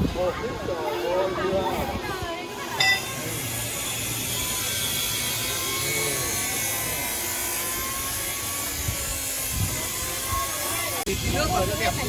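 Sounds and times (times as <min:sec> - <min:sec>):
sawmill machinery running: 0:02.7 - 0:12.0.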